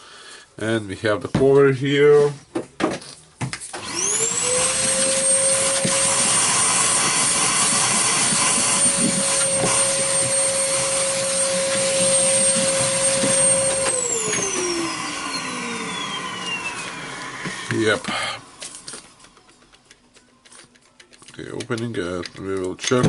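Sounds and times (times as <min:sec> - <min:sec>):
small electric motor whine: 0:03.8 - 0:19.1.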